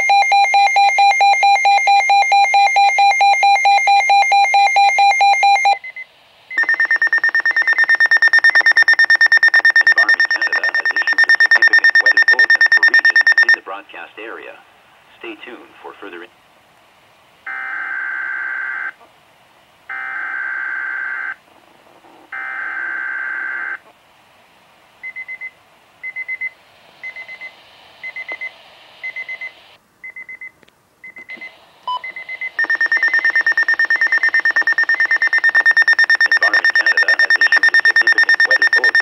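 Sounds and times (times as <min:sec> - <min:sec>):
rapidly pulsing alarm tone: 0:00.0 - 0:05.8, 0:06.6 - 0:13.6, 0:32.6 - 0:39.0
short high beeps: 0:31.9 - 0:39.0.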